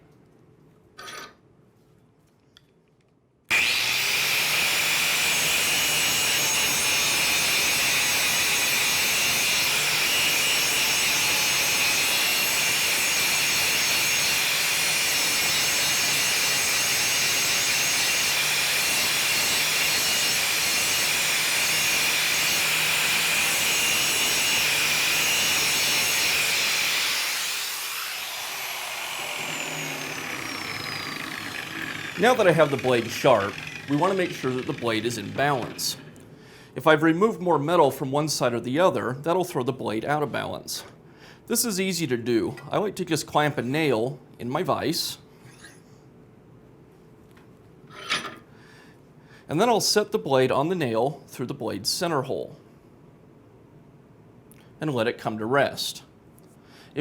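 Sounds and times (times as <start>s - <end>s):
grinder winding down whine: 3.5s - 13.0s, 14.3s - 36.2s
angle grinder grinding steel: 3.5s - 36.2s.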